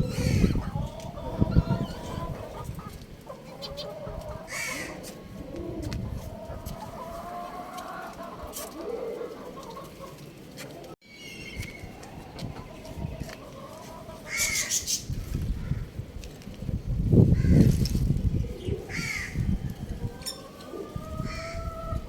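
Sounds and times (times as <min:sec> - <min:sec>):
rooster clucking and calling: 0:00.0 - 0:10.1.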